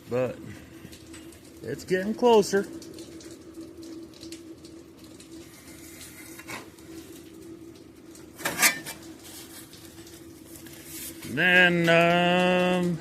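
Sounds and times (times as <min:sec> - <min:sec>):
metallic clatter: 0:08.4 - 0:09.1.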